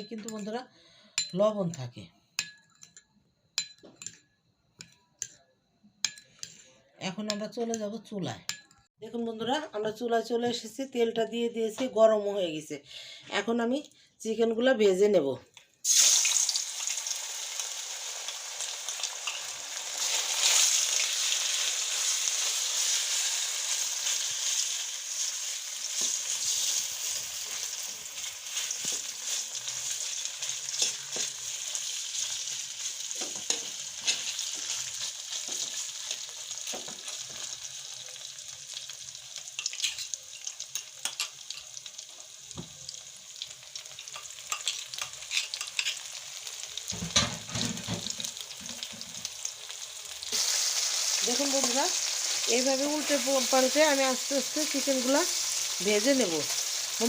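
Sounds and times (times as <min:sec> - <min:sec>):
chicken sizzling in hot oil: 0:15.8 - 0:57.0
spatula scraping a pan: 0:19.0 - 0:37.5, 0:44.0 - 0:46.2.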